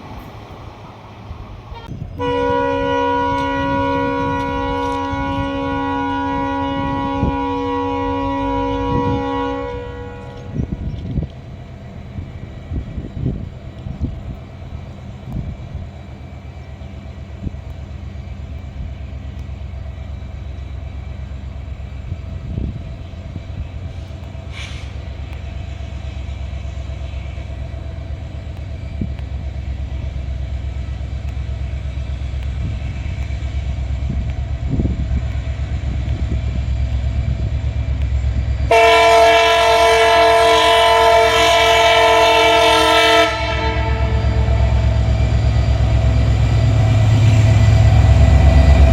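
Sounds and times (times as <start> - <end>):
diesel locomotive engine humming: 0.0 - 48.9
multi-tone train horn: 1.7 - 11.0, 38.7 - 48.9.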